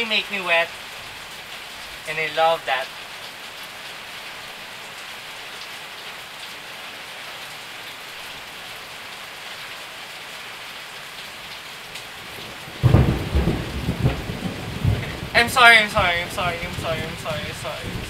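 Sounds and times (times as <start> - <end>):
steady rain falling: 0.0 - 18.0
thunder clap: 12.7 - 18.0.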